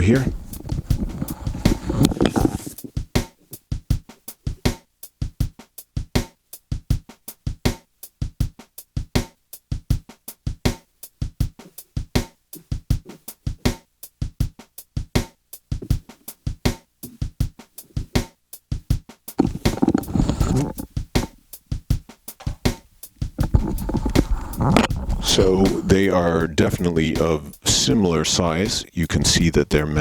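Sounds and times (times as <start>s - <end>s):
drum machine loop: 0.0s - 3.3s, 10.5s - 13.8s, 15.1s - 30.0s.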